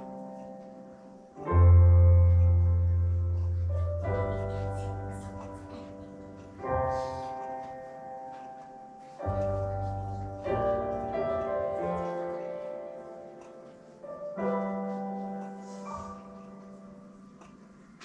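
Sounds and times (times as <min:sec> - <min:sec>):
gentle piano chords: 0:00.0 - 0:18.0.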